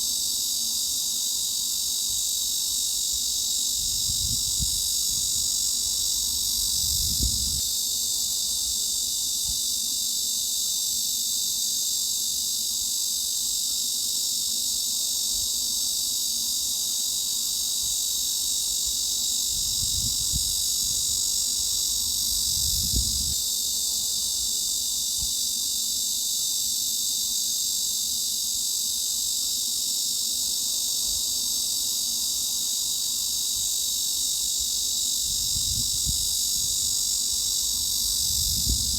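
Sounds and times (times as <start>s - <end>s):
cicadas droning: 0.0s - 38.9s.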